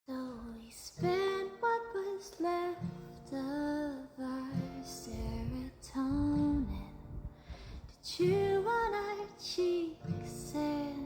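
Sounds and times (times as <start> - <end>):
woman singing softly: 0.1 - 11.0
acoustic guitar strums: 4.5 - 11.0.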